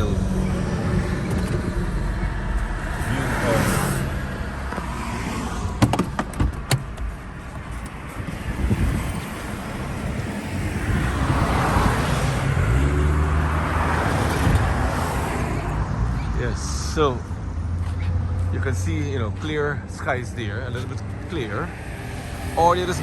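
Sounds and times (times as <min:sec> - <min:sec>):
car engine hum and road noise: 0:00.0 - 0:23.0
sharp clicks and knocks: 0:05.8 - 0:08.0.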